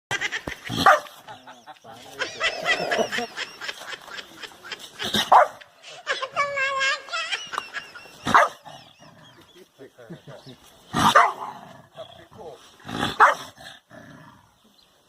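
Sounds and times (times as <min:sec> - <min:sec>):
dog drawn-out pitched calls: 0:00.7 - 0:01.5, 0:08.2 - 0:09.1
dog barking: 0:00.8 - 0:01.1, 0:05.3 - 0:05.6, 0:08.3 - 0:08.6, 0:11.0 - 0:11.6, 0:13.2 - 0:13.5.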